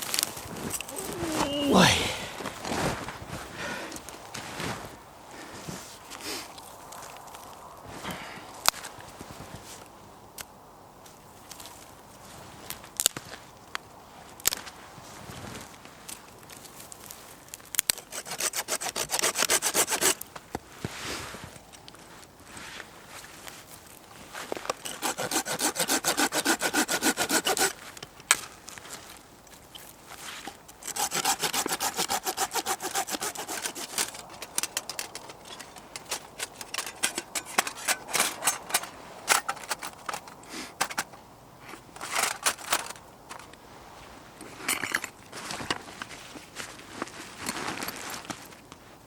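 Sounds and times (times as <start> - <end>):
wood being handled: 0.0 - 4.9, 24.4 - 43.6
hand saw cutting wood: 17.9 - 20.2, 24.8 - 27.8, 30.4 - 40.2.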